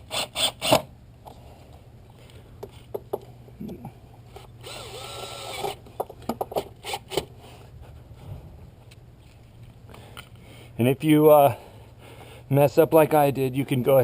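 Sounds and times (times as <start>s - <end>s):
cordless drill spinning: 4.4s - 5.8s
clicks and knocks of handled parts: 5.6s - 7.3s.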